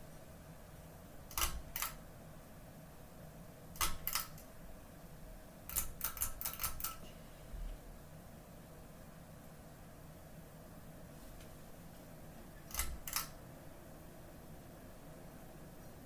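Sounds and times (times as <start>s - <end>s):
faint steady low hum: 0.0s - 16.0s
sharp mechanical clicks: 1.3s - 2.0s, 3.8s - 4.5s, 5.7s - 7.0s, 12.6s - 13.4s.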